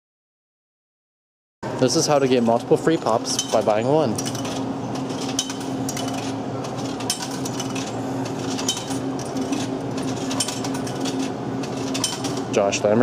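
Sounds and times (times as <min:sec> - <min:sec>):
vending machine humming: 0:01.6 - 0:13.0
sharp clicks and clinks: 0:03.3 - 0:12.5.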